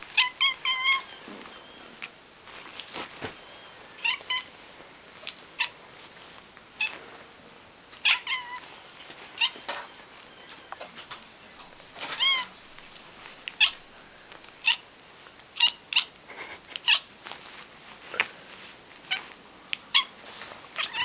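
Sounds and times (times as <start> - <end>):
cat giving bark-like calls: 0.2 - 1.2, 12.0 - 13.9.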